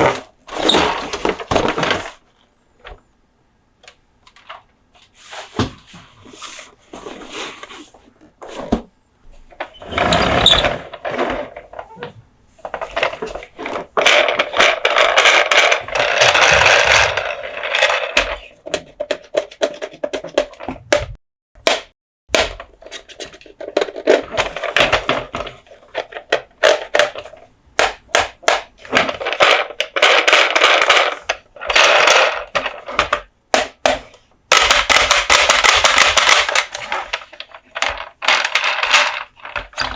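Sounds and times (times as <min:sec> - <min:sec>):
toy trucks clicking and tapping: 0:22.3 - 0:39.9.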